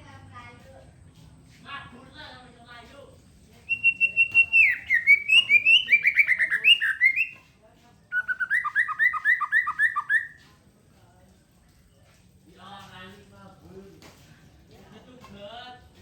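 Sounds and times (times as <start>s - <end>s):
songbird singing: 3.6s - 10.5s.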